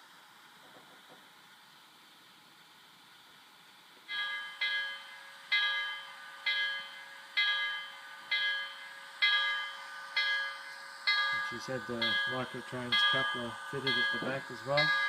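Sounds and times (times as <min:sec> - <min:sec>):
locomotive bell ringing: 0:04.1 - 0:15.0.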